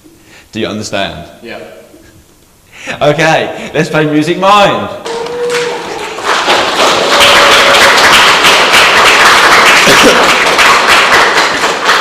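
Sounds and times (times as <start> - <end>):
audience applauding: 5.0 - 12.0.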